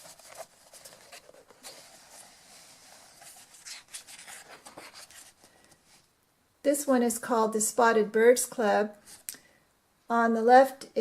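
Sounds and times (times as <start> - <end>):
paper pages rustling: 0.0 - 6.0.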